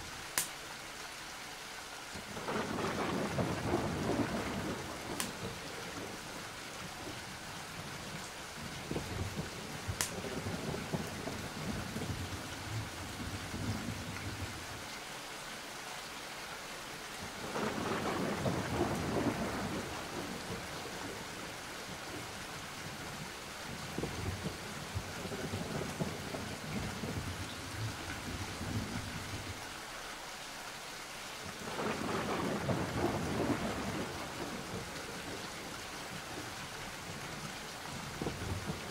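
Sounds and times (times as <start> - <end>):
steady rain: 0.0 - 38.9
rolling thunder: 2.4 - 6.2, 17.4 - 21.2, 31.6 - 35.4.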